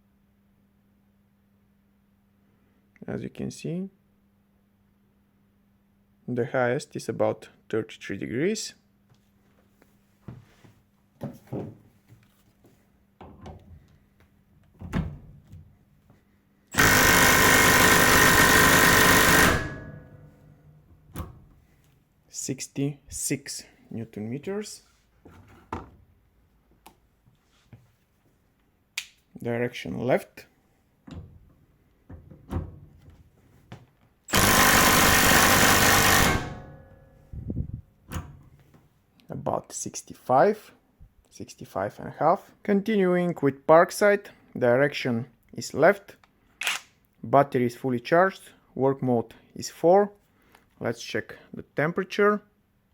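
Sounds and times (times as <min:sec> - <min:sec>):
impact wrench hammering: 0:16.8 - 0:20.4, 0:34.3 - 0:37.0.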